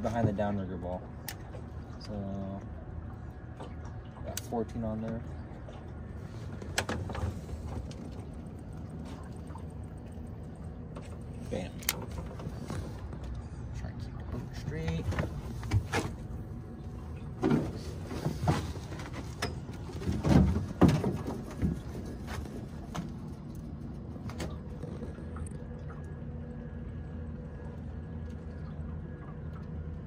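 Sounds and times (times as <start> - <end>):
boat motor running: 0.0 - 30.0.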